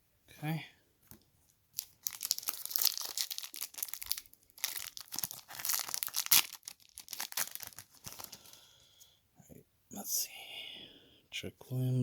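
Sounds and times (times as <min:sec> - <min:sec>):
foil wrapper crinkling: 0:01.8 - 0:08.7.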